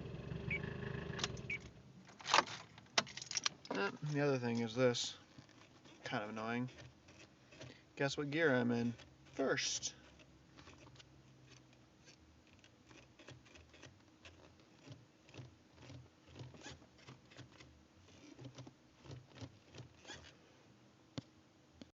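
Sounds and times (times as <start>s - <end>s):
gear shifter clicking and knocking: 1.2s - 3.9s, 12.5s - 20.3s.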